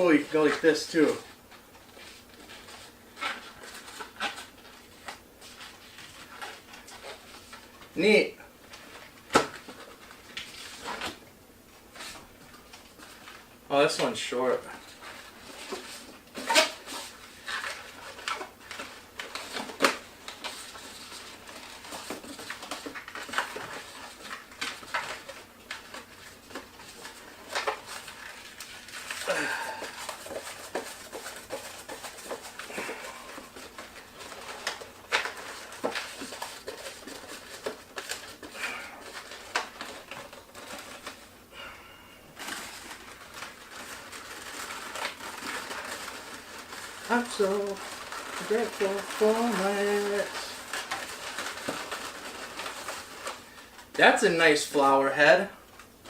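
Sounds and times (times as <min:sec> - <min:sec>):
balloons rubbing and squeaking: 0:43.0 - 0:53.2.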